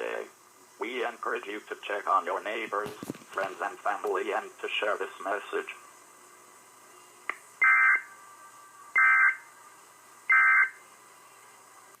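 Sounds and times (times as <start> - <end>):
electronic data squawks: 10.3 - 10.8.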